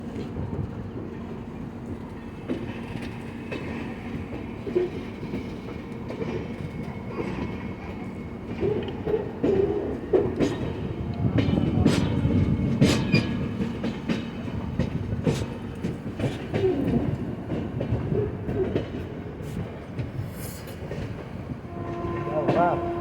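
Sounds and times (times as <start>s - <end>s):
train carriages rumbling: 0.0s - 23.0s.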